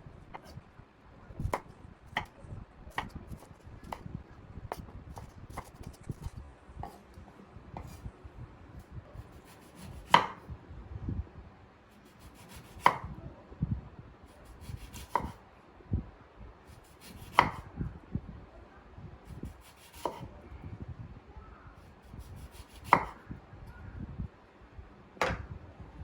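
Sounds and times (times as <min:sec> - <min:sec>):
knife chopping on cutting board: 0:01.4 - 0:02.3, 0:04.7 - 0:06.2, 0:09.5 - 0:10.4, 0:12.3 - 0:13.0, 0:14.6 - 0:15.4, 0:17.0 - 0:17.6, 0:19.4 - 0:20.2, 0:22.4 - 0:23.2.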